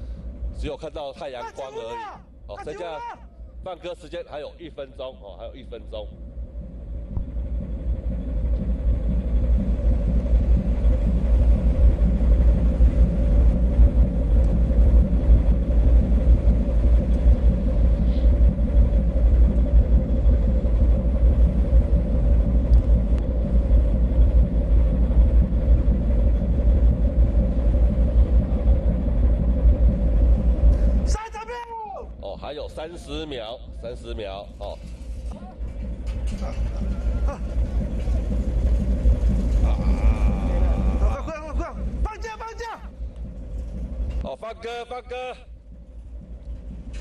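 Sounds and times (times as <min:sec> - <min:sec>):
ship engine running: 0:00.0 - 0:47.0
wind rumbling on microphone: 0:32.2 - 0:42.2.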